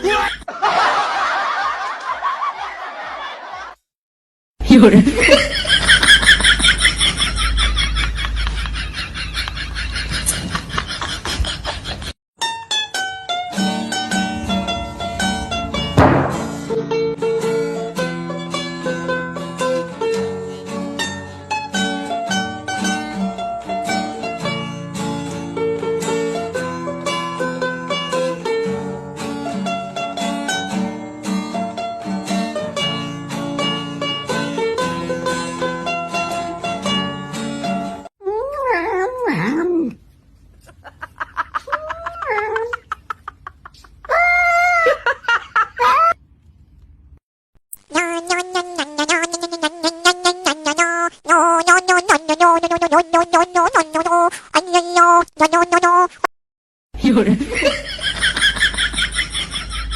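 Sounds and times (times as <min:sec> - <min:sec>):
plucked string tune: 0:12.4 - 0:21.1.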